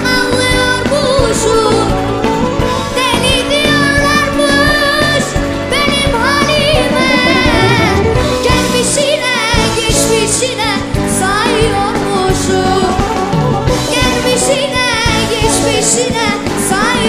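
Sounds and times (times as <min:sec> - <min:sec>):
instrumental accompaniment: 0:05.3 - 0:09.4.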